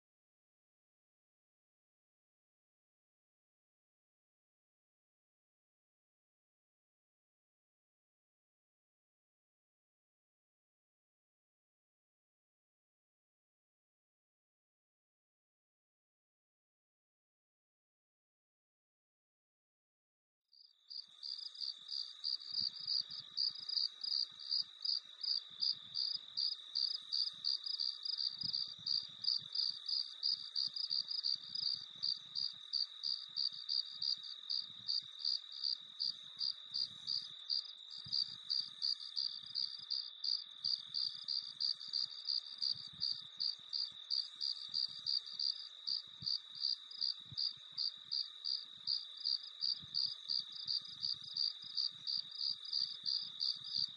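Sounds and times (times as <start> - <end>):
crickets chirping: 20.6 - 53.9.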